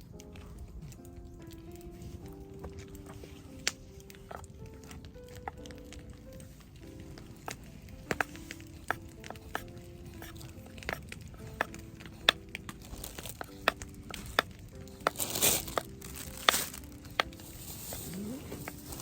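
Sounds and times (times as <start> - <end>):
sharp cracks and snaps: 0.0 - 19.0
soft background music: 0.0 - 19.0
rustling hiss: 15.0 - 19.0.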